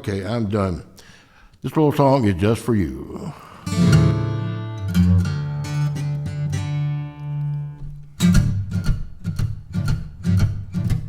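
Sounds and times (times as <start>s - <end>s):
acoustic guitar playing blues: 3.5s - 11.0s.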